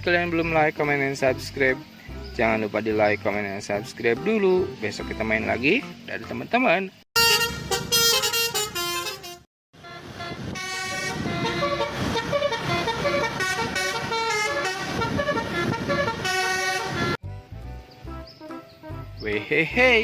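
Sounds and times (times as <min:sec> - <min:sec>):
vehicle horn playing a tune: 0:07.2 - 0:17.2.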